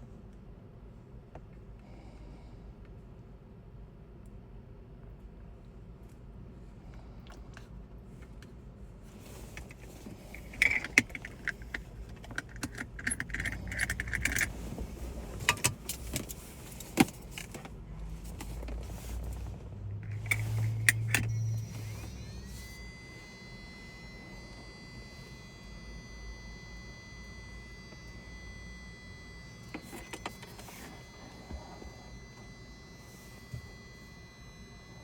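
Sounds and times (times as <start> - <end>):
low hum: 6.0 - 35.0
high whine: 9.6 - 35.0
metal tools clicking and jingling: 10.4 - 14.5.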